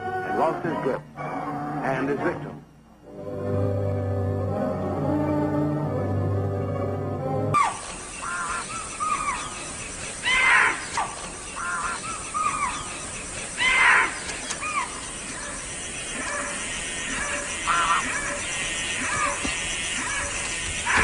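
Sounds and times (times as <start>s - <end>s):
background hiss: 2.1s - 21.0s
birds calling: 7.6s - 21.0s
harsh bird call: 7.6s - 21.0s.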